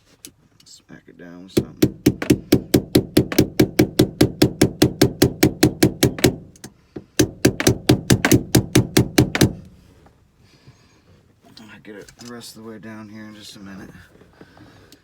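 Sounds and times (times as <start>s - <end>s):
rapid tapping on a clip: 1.6s - 9.6s.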